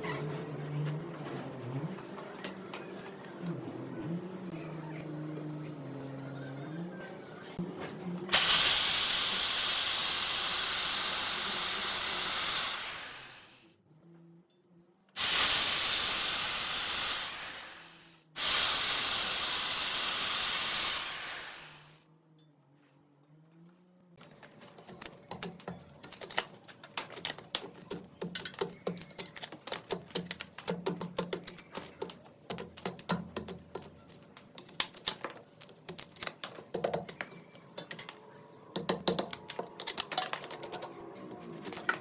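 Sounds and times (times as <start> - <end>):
compressed air hissing: 8.3 - 13.7, 15.2 - 22.0.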